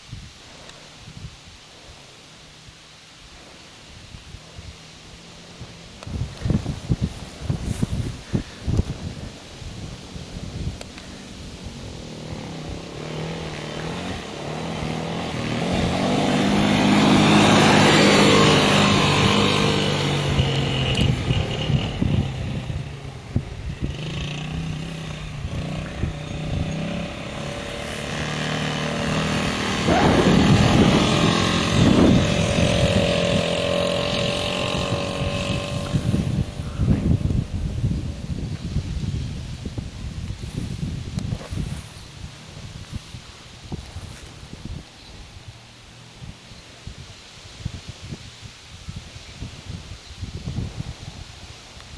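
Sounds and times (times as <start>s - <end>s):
atv engine revving: 4.3s - 38.8s.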